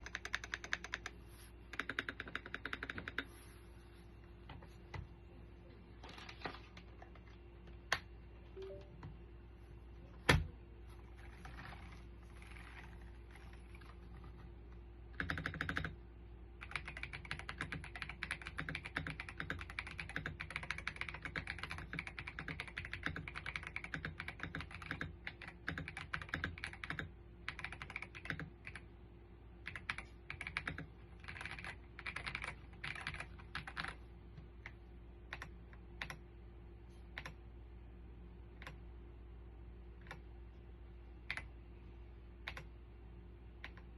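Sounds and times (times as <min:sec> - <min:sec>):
typing on mechanical keyboard: 0:00.0 - 0:03.3, 0:11.2 - 0:14.4, 0:15.2 - 0:16.0, 0:16.6 - 0:28.8, 0:29.6 - 0:34.0, 0:41.3 - 0:41.5, 0:42.4 - 0:42.7.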